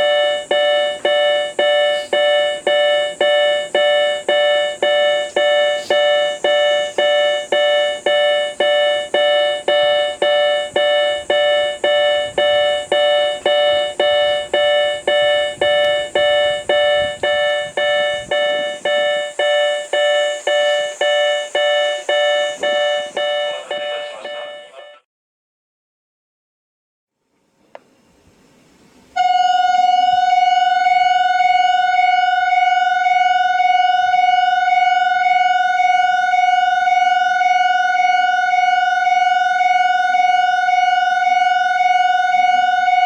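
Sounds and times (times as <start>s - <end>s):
bell-like electronic warning chime: 0.0s - 25.0s.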